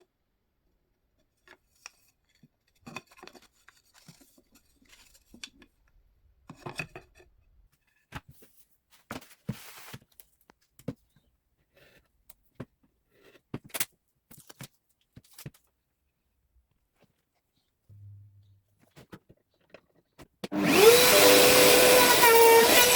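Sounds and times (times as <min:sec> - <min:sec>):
rasping scrape: 0:20.6 - 0:22.9.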